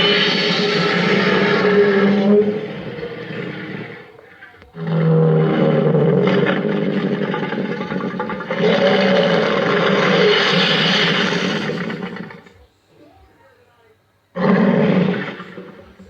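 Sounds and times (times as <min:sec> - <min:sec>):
monster roar: 0:00.0 - 0:12.4, 0:14.4 - 0:16.0.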